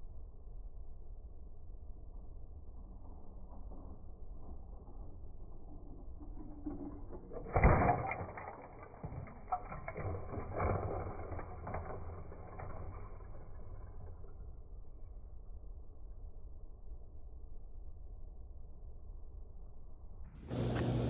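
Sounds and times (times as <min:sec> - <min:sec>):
plastic bricks clattering: 0:05.7 - 0:14.4.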